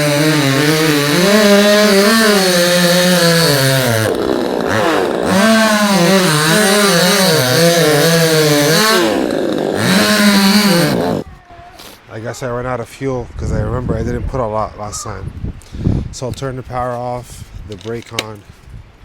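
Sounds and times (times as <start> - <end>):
chainsaw running at high revs: 0.0 - 11.2.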